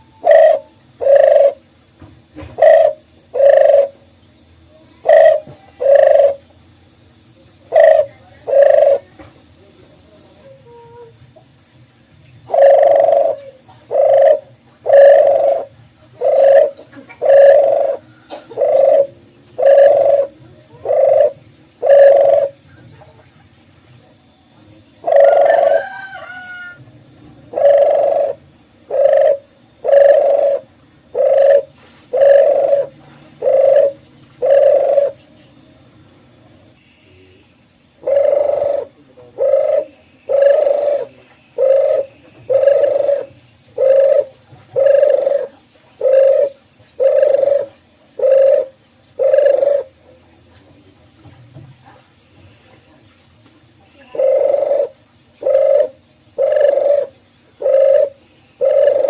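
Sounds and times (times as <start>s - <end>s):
dove cooing: 0.0s - 1.8s, 2.4s - 4.2s, 4.8s - 6.5s, 7.6s - 9.3s, 12.4s - 23.5s, 24.8s - 26.8s, 27.5s - 35.2s, 38.0s - 50.3s, 53.9s - 59.0s.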